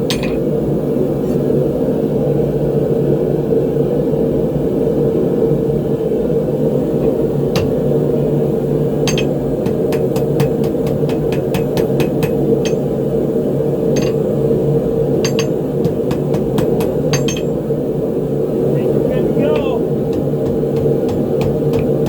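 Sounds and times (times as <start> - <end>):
hammer striking hot steel on anvil: 0.0 - 0.5, 7.0 - 8.1, 8.9 - 13.0, 13.9 - 14.4, 15.1 - 17.7, 19.1 - 22.0
forge burner roaring: 0.0 - 22.0.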